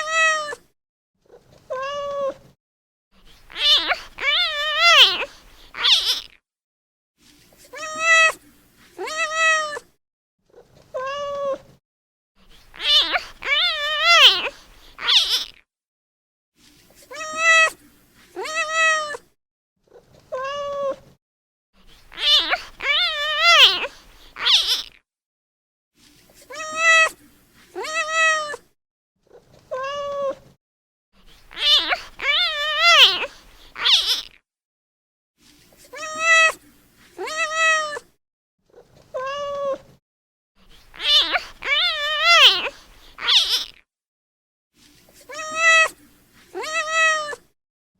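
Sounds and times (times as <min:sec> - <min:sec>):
kitten meowing: 0:00.0 - 0:00.6, 0:03.5 - 0:06.3, 0:07.8 - 0:08.4, 0:09.0 - 0:09.8, 0:12.8 - 0:15.6, 0:17.1 - 0:17.8, 0:18.4 - 0:19.2, 0:22.1 - 0:24.9, 0:27.8 - 0:28.6, 0:31.5 - 0:34.4, 0:36.0 - 0:36.6, 0:37.2 - 0:38.0, 0:40.9 - 0:43.8, 0:45.3 - 0:45.9, 0:46.6 - 0:47.4.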